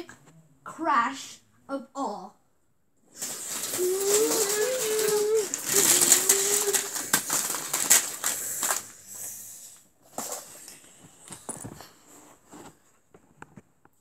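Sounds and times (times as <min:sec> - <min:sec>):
plastic bricks clattering: 0:03.2 - 0:08.9.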